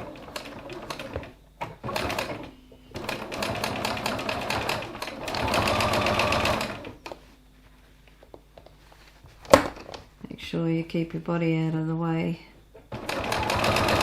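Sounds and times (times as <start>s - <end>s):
sewing machine stitching: 0.0s - 7.0s, 12.9s - 14.0s.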